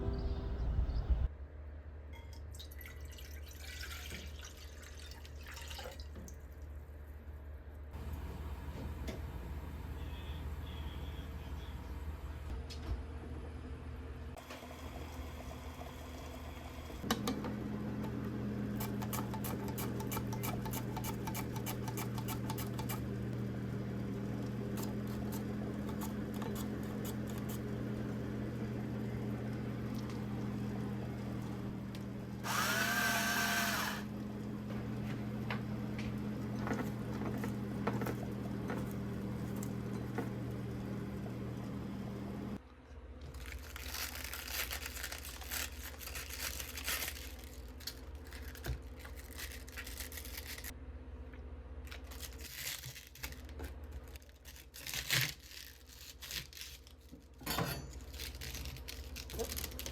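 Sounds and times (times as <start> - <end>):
kitchen appliance motor hum: 14.4 - 42.6.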